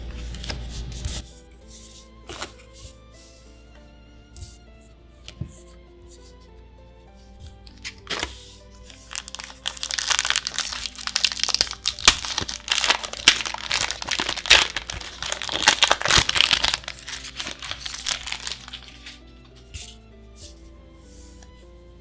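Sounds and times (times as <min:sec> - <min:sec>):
foil wrapper crinkling: 0:07.8 - 0:19.2.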